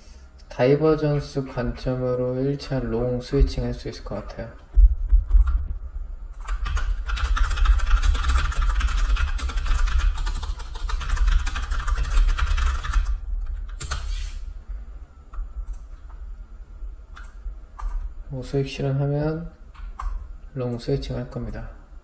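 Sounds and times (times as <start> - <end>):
rapid keyboard typing: 5.0 - 14.1, 17.1 - 18.1.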